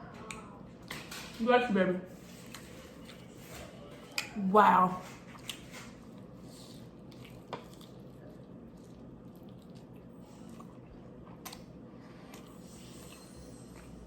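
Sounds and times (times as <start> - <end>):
wet chewing: 5.0 - 14.0.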